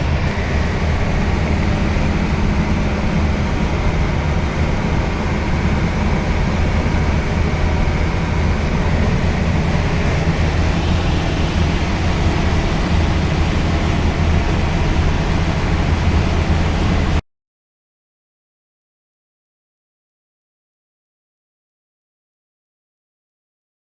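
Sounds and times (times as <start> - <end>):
diesel engine running: 0.0 - 17.2
drivetrain and road noise: 0.0 - 17.2.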